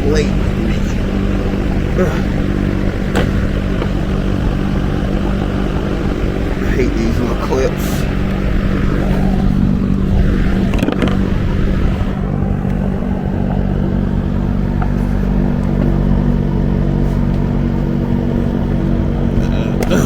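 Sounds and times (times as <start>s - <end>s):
motor hum: 0.0s - 20.0s.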